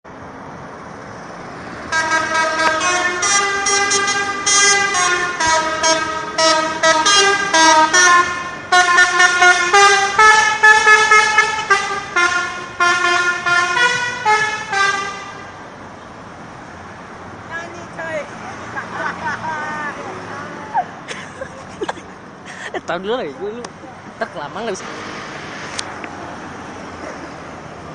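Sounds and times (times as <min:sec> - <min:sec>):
multi-tone musical horn tune: 0:01.9 - 0:15.4.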